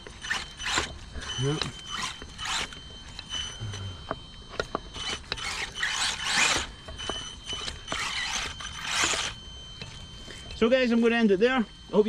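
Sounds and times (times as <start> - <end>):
toy truck motor whirring: 0.0 - 3.9, 4.6 - 10.0.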